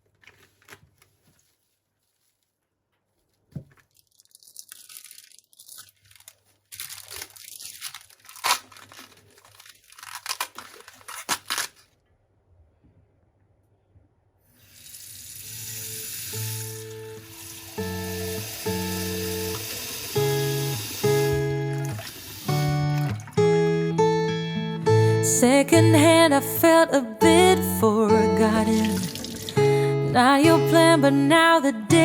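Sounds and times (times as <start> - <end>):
packaging crinkling and tearing: 0.0 - 2.3, 3.2 - 12.0
frying sizzle: 15.4 - 22.7
music: 16.4 - 32.0.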